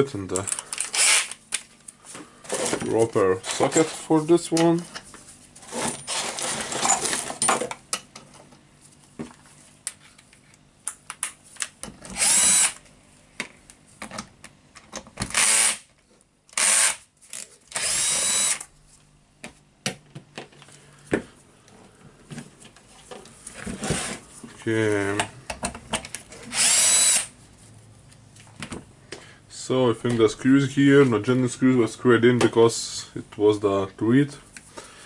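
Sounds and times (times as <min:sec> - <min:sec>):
power drill bursts: 0:00.9 - 0:01.3, 0:12.2 - 0:12.8, 0:15.3 - 0:15.8, 0:16.6 - 0:17.0, 0:17.7 - 0:18.6, 0:26.5 - 0:27.3.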